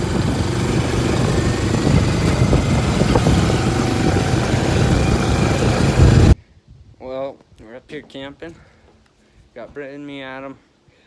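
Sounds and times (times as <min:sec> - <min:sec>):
vehicle engine running: 0:00.0 - 0:06.4
wind noise on microphone: 0:00.0 - 0:07.1.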